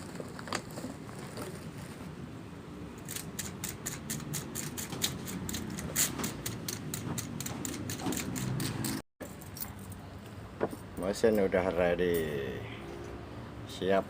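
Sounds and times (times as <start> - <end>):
typewriter clacking: 3.1 - 9.0.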